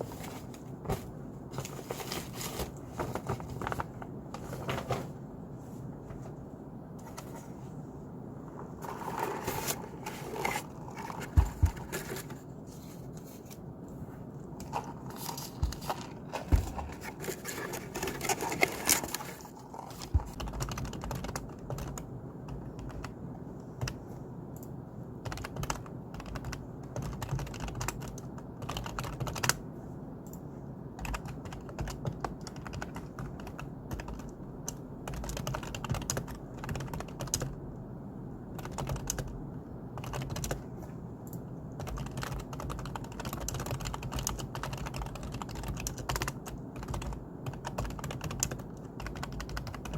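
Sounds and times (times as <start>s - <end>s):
typing on computer keyboard: 20.0s - 23.2s, 24.6s - 29.6s, 31.0s - 37.6s, 38.5s - 39.4s, 40.0s - 40.6s, 41.3s - 49.9s.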